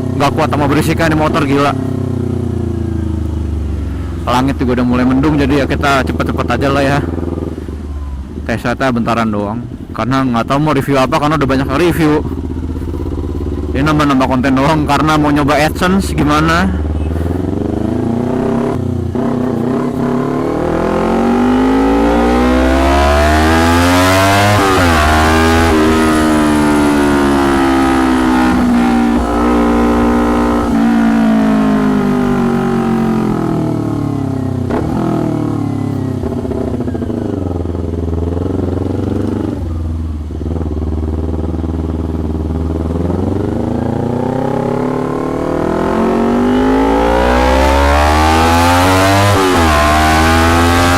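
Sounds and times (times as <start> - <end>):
motorcycle exhaust revving: 0.0 - 8.5, 11.4 - 50.9
exhaust cracks: 34.6 - 35.4.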